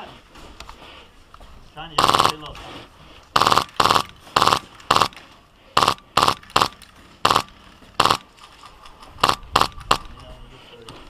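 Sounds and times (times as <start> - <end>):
airsoft gun firing bursts: 2.0 - 2.5, 3.3 - 5.2, 5.8 - 8.3, 9.2 - 10.0.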